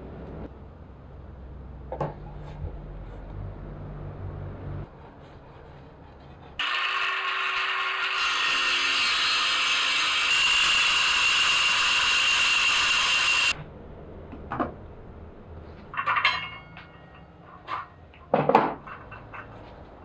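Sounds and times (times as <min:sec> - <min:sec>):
power tool whining: 0:06.6 - 0:13.6.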